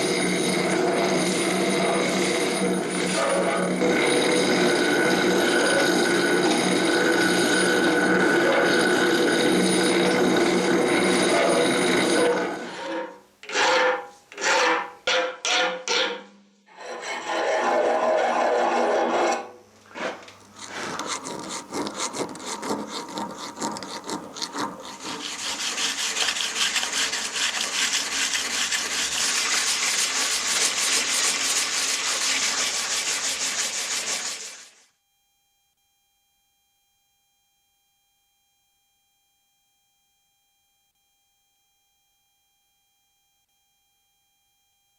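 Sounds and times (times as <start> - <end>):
hand scraping strokes: 17.0 - 34.6.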